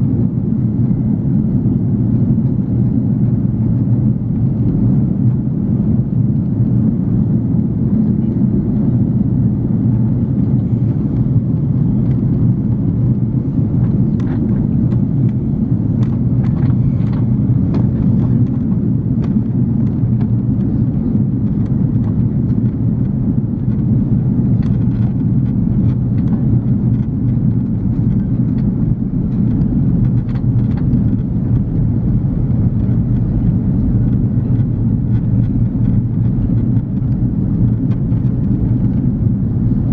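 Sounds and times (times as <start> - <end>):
airliner cabin engine rumble: 0.0 - 39.9
faint clicks and rattles: 23.6 - 39.1.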